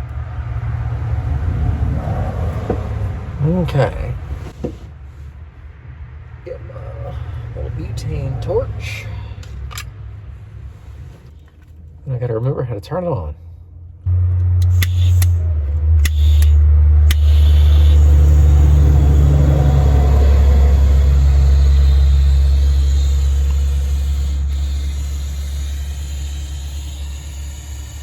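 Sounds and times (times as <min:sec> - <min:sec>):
torch igniter clicks: 0:14.5 - 0:15.4
torch flame roaring: 0:16.0 - 0:28.0.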